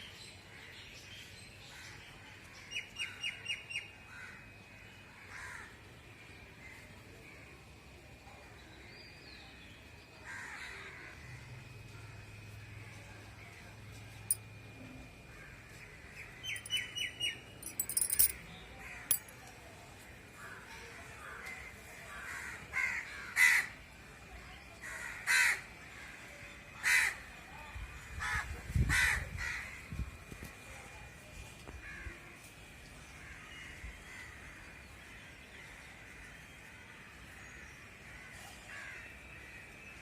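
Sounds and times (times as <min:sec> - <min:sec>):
small bird chirping: 0:16.5 - 0:18.3
crow cawing: 0:22.2 - 0:23.7, 0:25.0 - 0:25.6.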